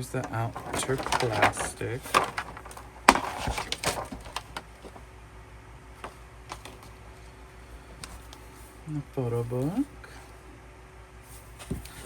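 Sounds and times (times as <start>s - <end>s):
packaging click: 0.0s - 5.0s
packaging rustle: 0.0s - 5.1s, 6.0s - 7.0s.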